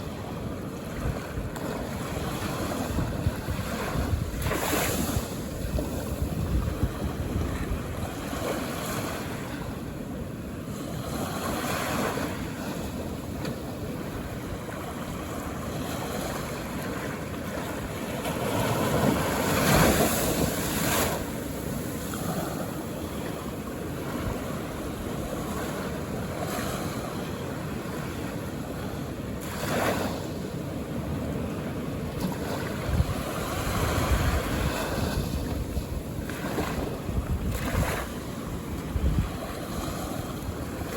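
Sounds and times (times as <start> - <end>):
wind buffeting microphone: 0.0 - 9.9, 29.6 - 40.9
ocean waves on a beach: 0.0 - 40.9.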